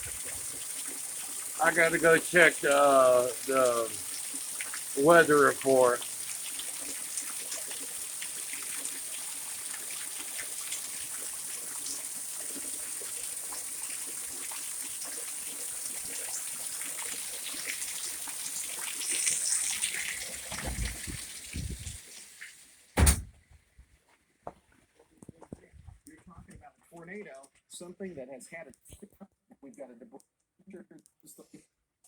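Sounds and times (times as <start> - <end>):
rain pattering: 0.0 - 22.0
low thumps: 23.0 - 23.4.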